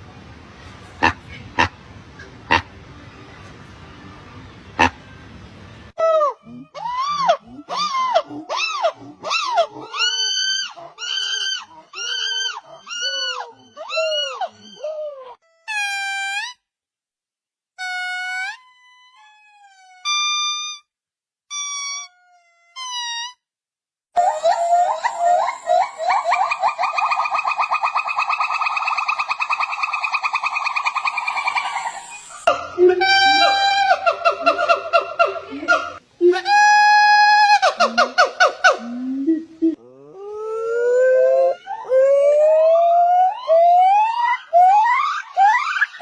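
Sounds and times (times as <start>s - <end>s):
monkey calling: 6.0s - 16.5s, 24.2s - 46.0s.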